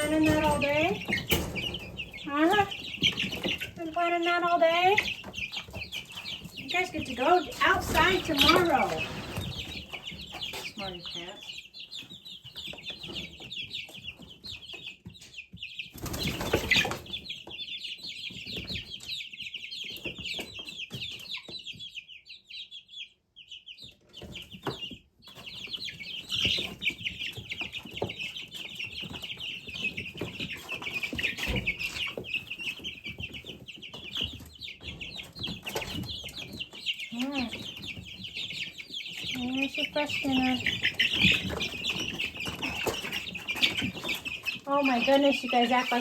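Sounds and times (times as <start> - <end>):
chickens clucking: 0.0 - 46.0.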